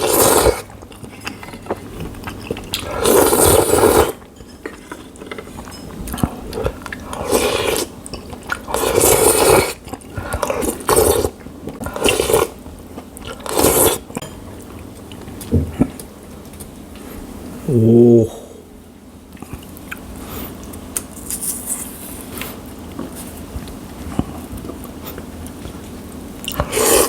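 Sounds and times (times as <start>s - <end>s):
slurping noodles: 0.0s - 4.2s, 6.6s - 7.9s, 8.5s - 12.6s, 13.3s - 14.1s, 26.5s - 27.0s.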